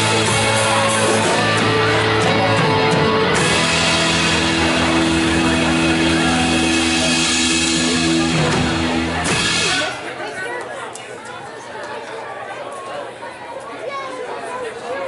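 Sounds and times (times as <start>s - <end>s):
rock band music: 0.0s - 10.1s.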